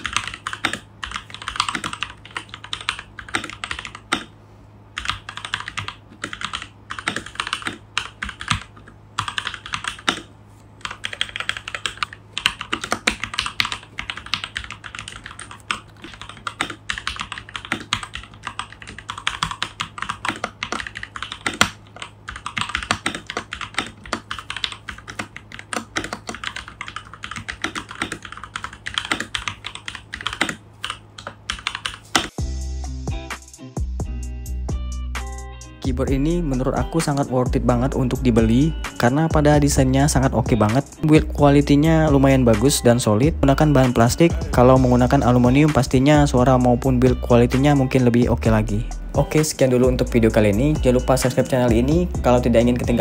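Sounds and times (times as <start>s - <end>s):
mechanical keyboard typing: 0.0s - 4.3s, 5.0s - 32.4s, 43.8s - 48.4s, 49.2s - 53.0s.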